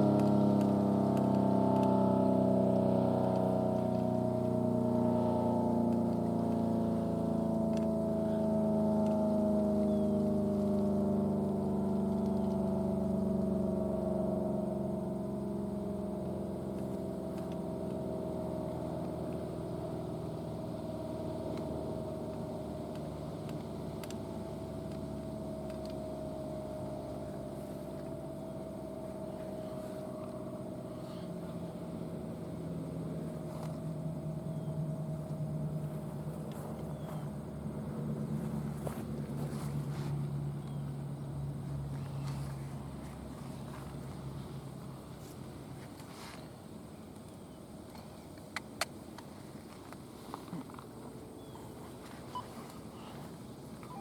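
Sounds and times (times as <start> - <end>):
siren winding down: 0.0 - 13.7
low hum: 0.0 - 48.4.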